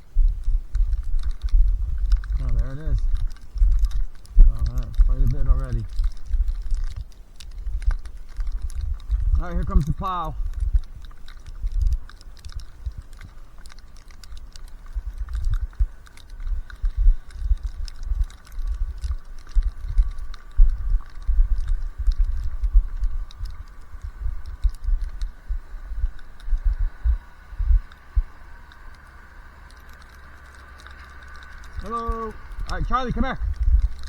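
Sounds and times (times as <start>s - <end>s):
footsteps crunching through snow: 0.0s - 29.7s.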